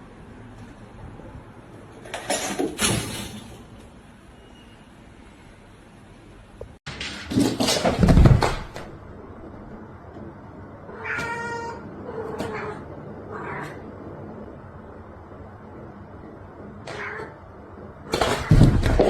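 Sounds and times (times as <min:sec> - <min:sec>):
cat meowing: 0:10.9 - 0:13.8, 0:16.8 - 0:17.4.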